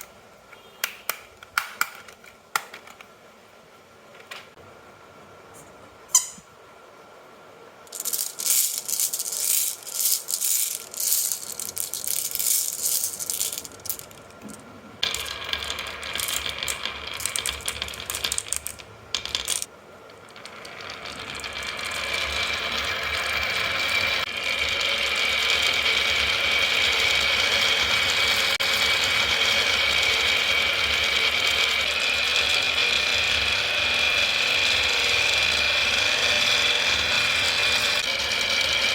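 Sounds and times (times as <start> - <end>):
marbles clattering down a track: 7.9 - 38.9
marbles rolling rush: 7.9 - 38.9.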